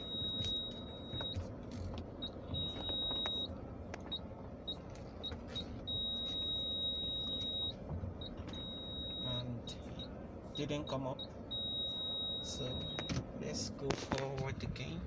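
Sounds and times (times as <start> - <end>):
tyres rumbling on rough road: 0.0 - 15.0
high electronic beep: 8.6 - 9.5, 10.6 - 13.1.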